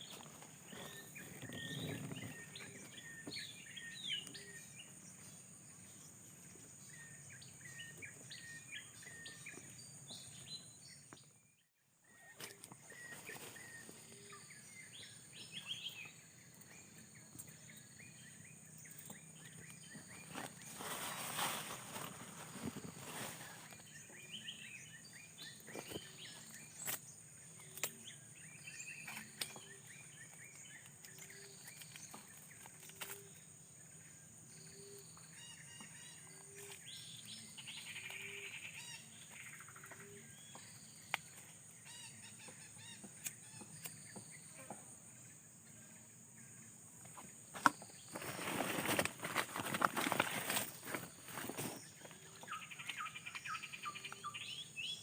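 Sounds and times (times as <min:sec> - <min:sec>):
birds calling: 0:00.0 - 0:45.6, 0:46.4 - 0:55.0.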